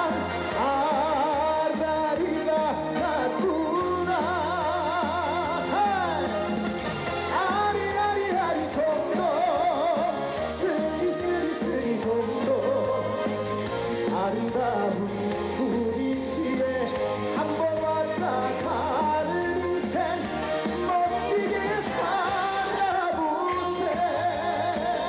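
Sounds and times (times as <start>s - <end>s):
backing band with bass: 0.0s - 25.0s
vocal melody with vibrato: 0.0s - 25.0s.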